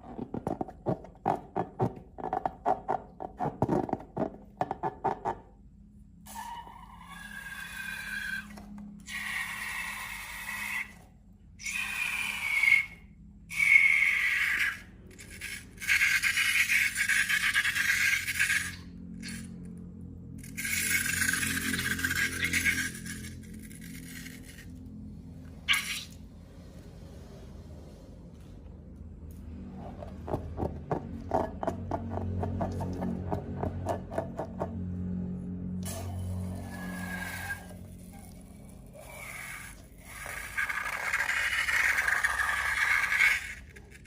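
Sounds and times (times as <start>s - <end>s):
air squealing from balloon neck: 6.3s - 11.0s, 11.6s - 19.4s, 25.7s - 26.2s, 36.6s - 43.8s.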